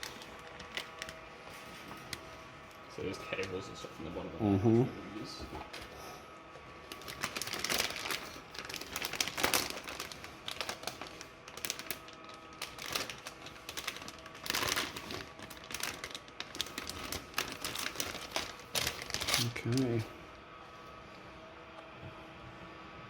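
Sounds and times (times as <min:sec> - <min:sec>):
plastic bags crinkling: 0:00.0 - 0:02.4, 0:06.6 - 0:20.0.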